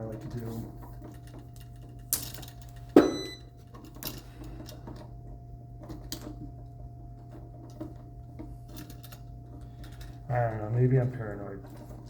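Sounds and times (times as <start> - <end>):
sharp ringing knock: 3.0 - 3.4.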